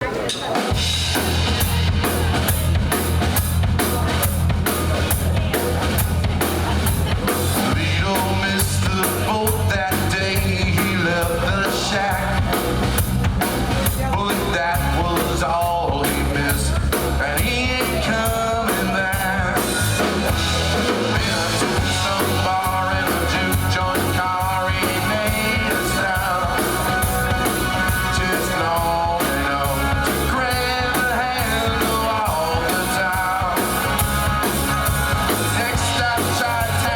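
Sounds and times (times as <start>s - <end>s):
rock song with singing: 0.0s - 36.9s.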